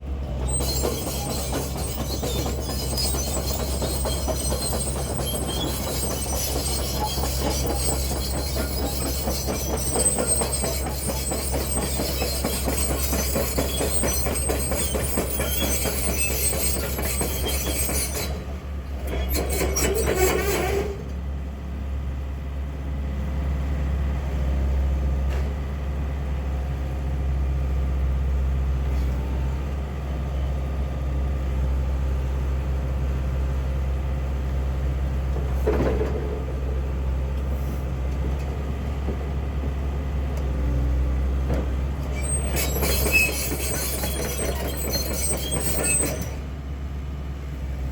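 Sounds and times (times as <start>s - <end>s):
diesel engine running: 0.0s - 19.6s, 38.7s - 47.9s
metallic clattering and squealing: 0.3s - 18.5s, 19.1s - 21.0s, 42.0s - 46.5s.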